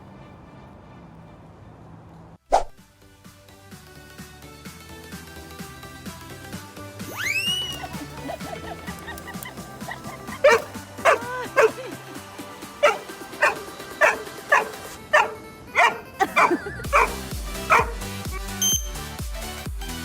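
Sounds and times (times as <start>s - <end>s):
background music: 2.9s - 20.0s
dog barking: 7.6s - 11.9s, 12.8s - 18.8s.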